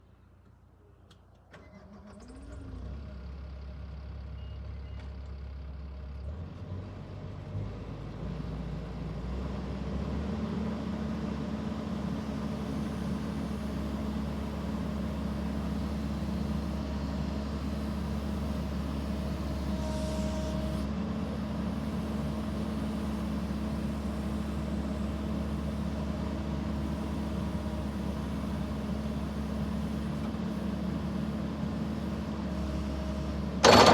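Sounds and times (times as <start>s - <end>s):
diesel engine cranking and running: 1.5s - 3.2s, 33.5s - 33.9s.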